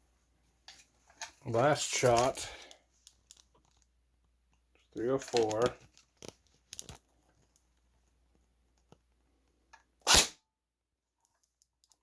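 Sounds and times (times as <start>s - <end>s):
airsoft gun shot: 10.1s - 10.4s.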